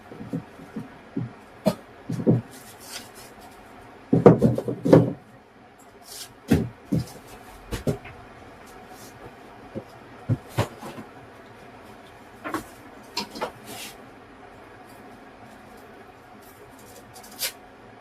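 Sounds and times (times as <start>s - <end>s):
knocks on wood: 4.1s - 5.2s.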